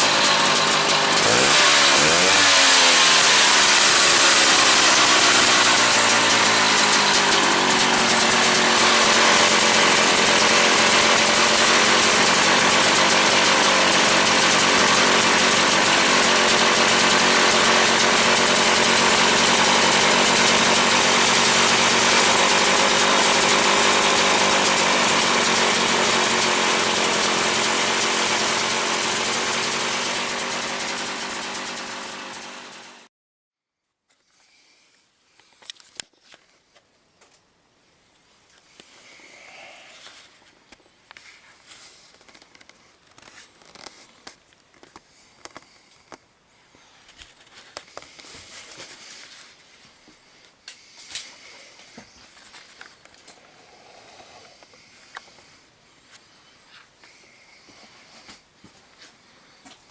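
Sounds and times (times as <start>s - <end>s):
two-stroke engine running: 0.0s - 33.1s.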